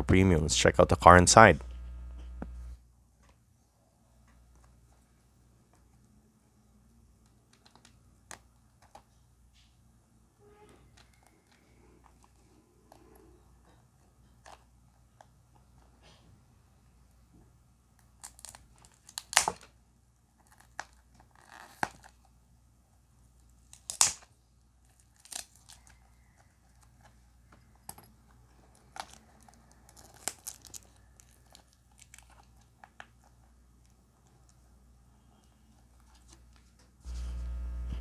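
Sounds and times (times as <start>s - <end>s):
cardboard and plastic packaging crinkling: 28.7s - 33.4s.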